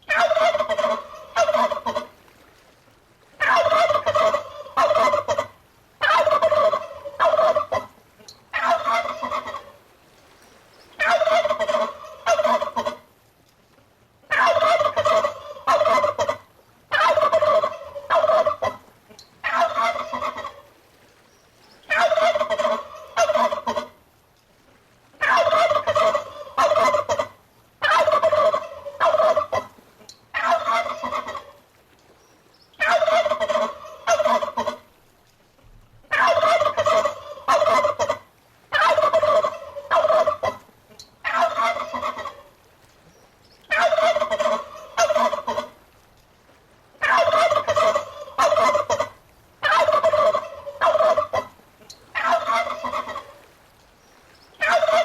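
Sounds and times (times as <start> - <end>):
turkey gobbling: 0.0 - 2.1, 3.4 - 9.8, 11.0 - 13.0, 14.3 - 20.7, 21.9 - 24.0, 25.2 - 31.6, 32.8 - 34.8, 36.0 - 42.5, 43.7 - 45.8, 47.0 - 53.5, 54.6 - 55.0.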